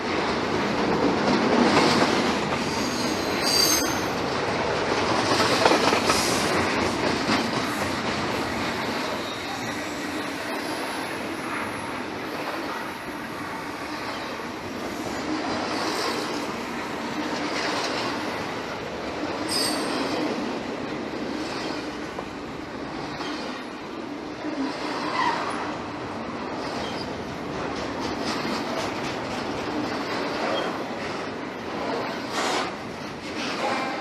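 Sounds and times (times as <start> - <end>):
freight train rumbling past: 0.0 - 34.0
train wheel squeals: 2.6 - 4.2, 9.0 - 12.5, 15.0 - 16.4, 19.4 - 20.3, 21.4 - 22.0, 23.0 - 23.7, 24.6 - 25.7, 26.6 - 27.3, 30.3 - 30.9.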